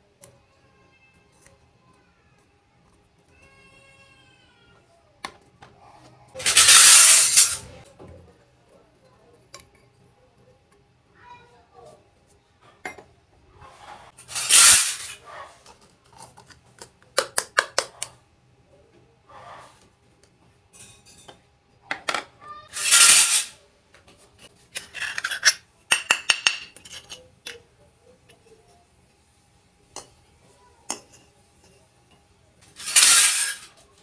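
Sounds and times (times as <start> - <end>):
toy cookware clinking: 6.4 - 7.8, 20.7 - 23.6, 24.7 - 28.8, 30.8 - 32.2, 32.8 - 33.8.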